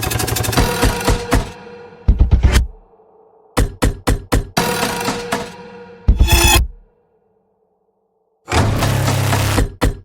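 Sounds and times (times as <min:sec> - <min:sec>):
harsh bowed-string screech: 0:06.1 - 0:06.8.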